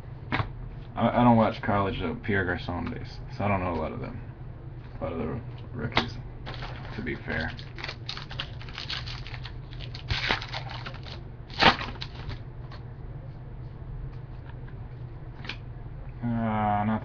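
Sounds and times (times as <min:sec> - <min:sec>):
card crackle: 0:06.4 - 0:12.4
trading cards rustling: 0:06.4 - 0:12.4.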